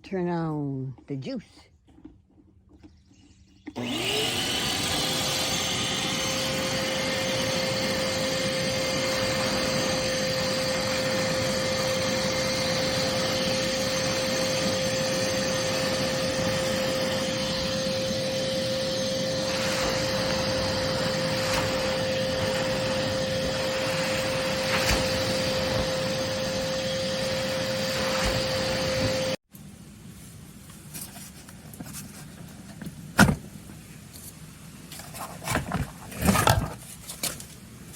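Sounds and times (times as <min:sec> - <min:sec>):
shop vacuum whining: 0:03.6 - 0:29.5.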